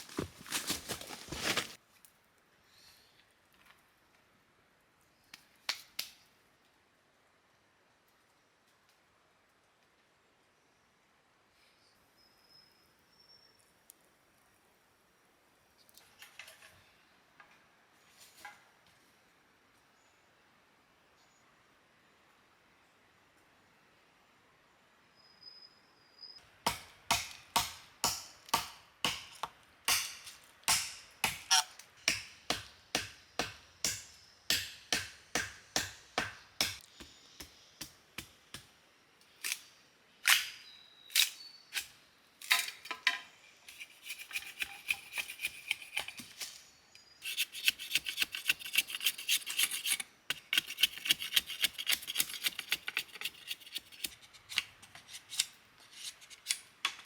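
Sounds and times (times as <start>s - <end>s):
chopping strikes: 26.7s - 31.5s, 32.1s - 38.7s
rapid scraping or cutting strokes: 47.2s - 54.2s.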